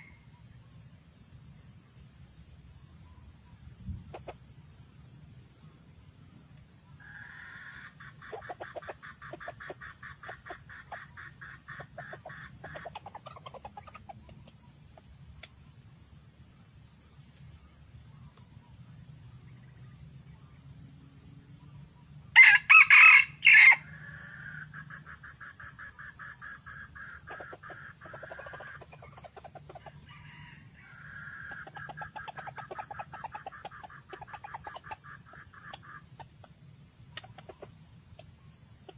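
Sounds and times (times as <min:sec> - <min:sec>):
rooster crowing: 0:22.4 - 0:24.6, 0:30.0 - 0:31.7.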